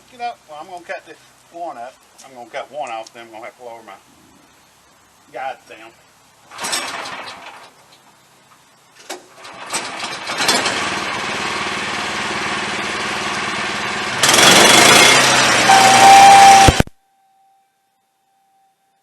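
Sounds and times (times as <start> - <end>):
sawmill engine running: 9.4 - 16.8
band saw blade cutting log: 14.2 - 16.7.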